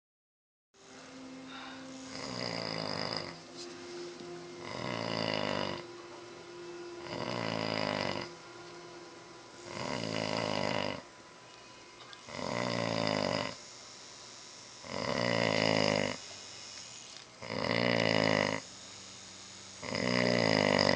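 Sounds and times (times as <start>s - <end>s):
rasping snoring: 1.5s - 3.5s, 4.6s - 5.9s, 7.0s - 8.4s, 9.6s - 11.0s, 12.2s - 13.7s, 14.8s - 20.9s.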